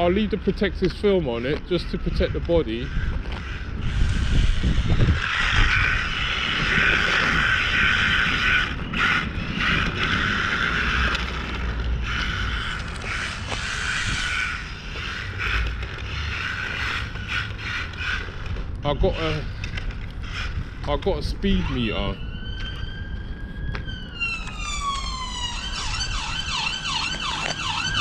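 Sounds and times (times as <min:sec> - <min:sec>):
rc car drivetrain noise: 0:02.9 - 0:21.0.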